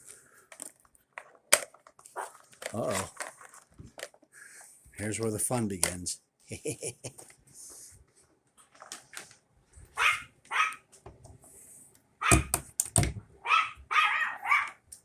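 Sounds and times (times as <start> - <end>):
dog barking: 10.0 - 10.8, 12.2 - 12.5, 13.4 - 14.8.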